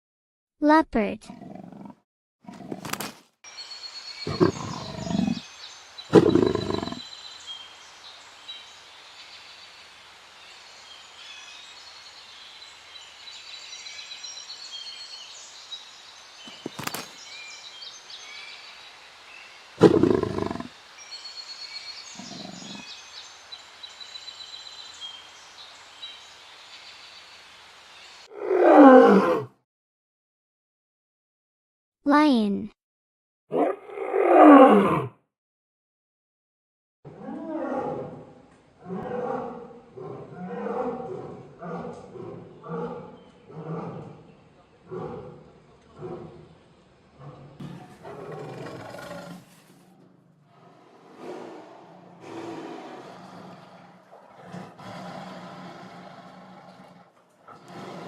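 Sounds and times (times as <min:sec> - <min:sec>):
leopard growling: 0:01.2 - 0:03.0, 0:04.3 - 0:05.4, 0:06.1 - 0:07.0, 0:19.8 - 0:20.7, 0:22.2 - 0:22.9, 0:33.5 - 0:35.1, 0:37.1 - 0:58.0
birds chirping: 0:03.5 - 0:28.3.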